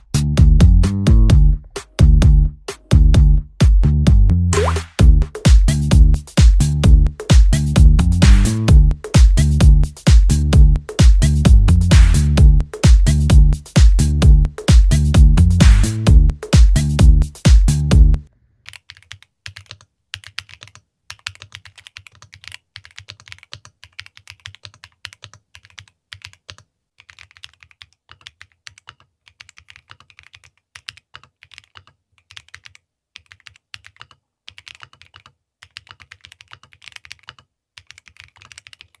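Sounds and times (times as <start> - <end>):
mechanical keyboard typing: 18.7 - 39.0.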